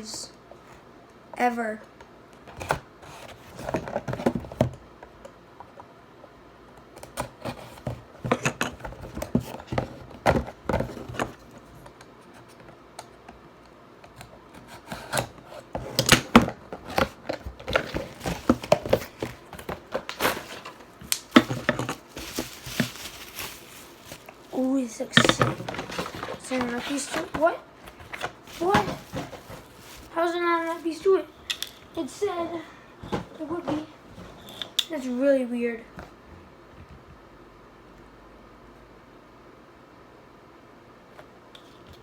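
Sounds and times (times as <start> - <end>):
cardboard and plastic rustling: 2.5 - 4.8, 7.0 - 12.7, 14.6 - 34.5
packaging clicks and scrapes: 14.6 - 31.1.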